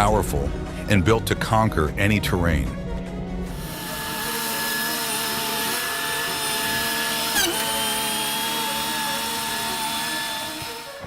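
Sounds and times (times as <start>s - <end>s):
machine whining: 3.5s - 11.0s.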